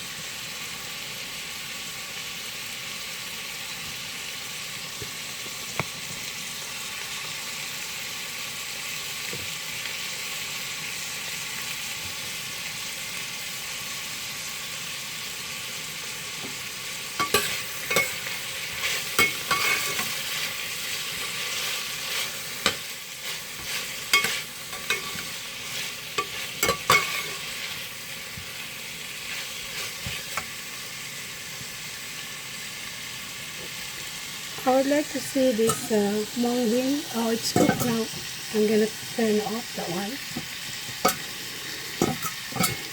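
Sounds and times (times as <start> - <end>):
food sizzling in a frying pan: 0.0 - 42.9
utensil scraping and knocking pan: 17.2 - 20.3, 22.2 - 27.6, 37.5 - 38.3, 40.4 - 41.3, 42.0 - 42.9.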